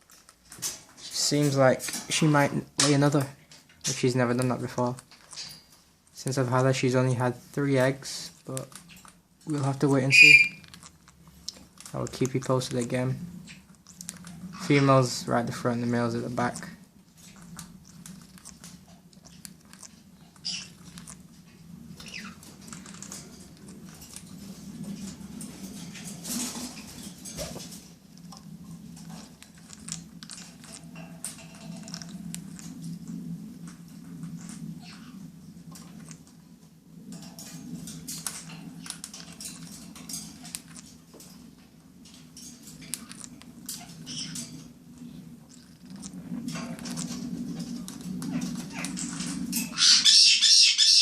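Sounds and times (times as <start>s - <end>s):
steady low hum: 0.0s - 50.1s
parrots clicking and scratching: 0.0s - 51.0s
parrot squeak: 10.1s - 10.7s, 20.4s - 20.8s, 22.0s - 22.4s, 44.1s - 44.4s, 49.7s - 51.0s.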